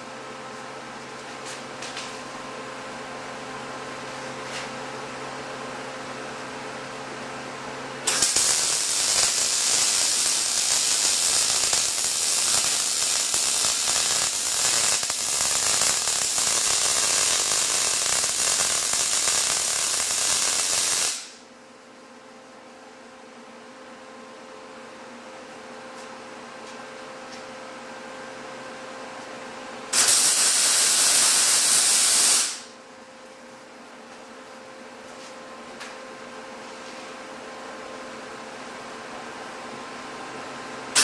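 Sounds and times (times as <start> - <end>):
faint welder hum: 0.0 - 41.0
welding arc crackling hiss: 8.0 - 21.4, 29.9 - 32.7.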